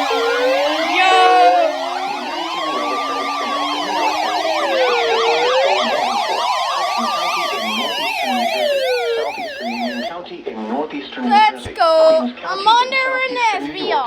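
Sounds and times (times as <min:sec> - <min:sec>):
siren wailing: 0:00.0 - 0:10.1
siren yelp sweeps: 0:00.0 - 0:10.1.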